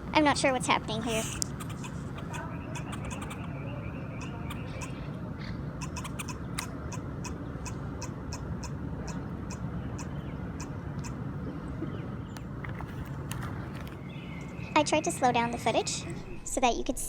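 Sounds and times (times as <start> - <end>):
low outdoor rumble: 0.0 - 17.0
blackbird chack notes: 0.4 - 5.0.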